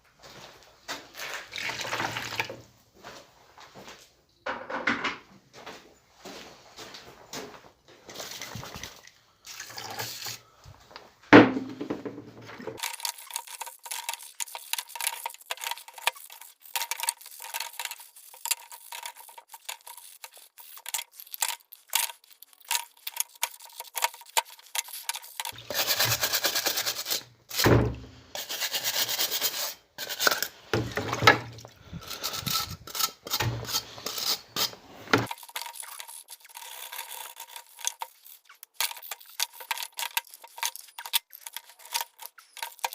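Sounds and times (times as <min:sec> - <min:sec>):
hand scraping on parts: 0:12.8 - 0:27.7, 0:28.4 - 0:42.9.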